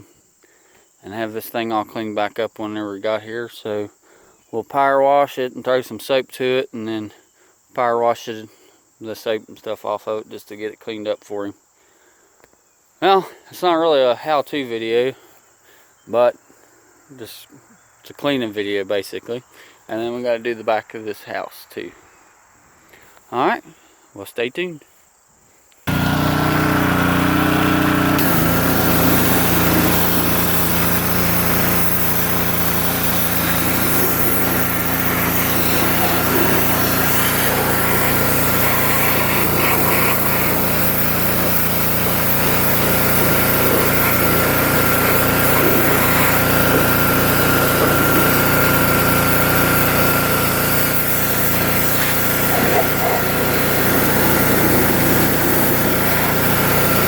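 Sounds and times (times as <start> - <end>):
pressure washer engine running: 25.9 - 57.0.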